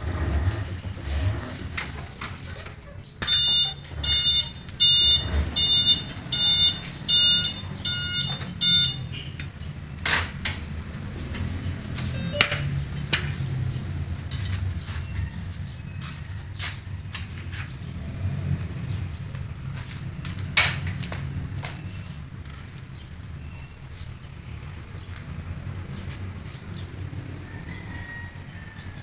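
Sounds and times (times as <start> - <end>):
electronic beeps: 3.2 - 9.4, 10.6 - 12.8.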